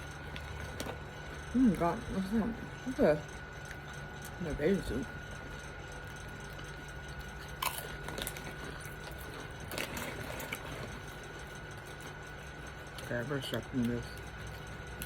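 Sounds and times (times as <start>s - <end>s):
tortilla chips crunching: 0.0s - 1.4s, 6.2s - 15.0s
steady low hum: 0.0s - 15.0s.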